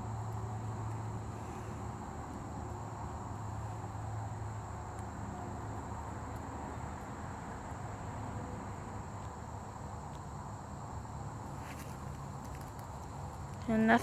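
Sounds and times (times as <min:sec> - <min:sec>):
high-pitched insect chorus: 0:00.0 - 0:14.0
low outdoor hiss and rumble: 0:00.0 - 0:14.0.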